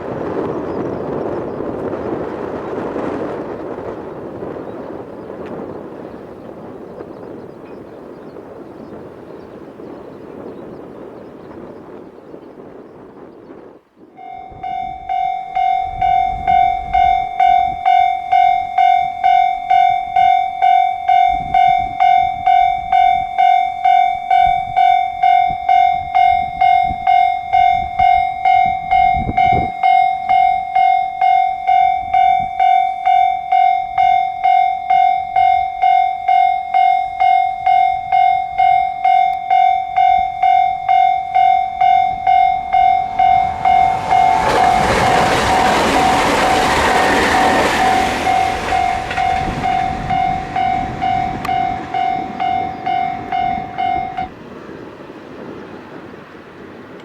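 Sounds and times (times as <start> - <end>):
level crossing warning bell: 14.1 - 54.6.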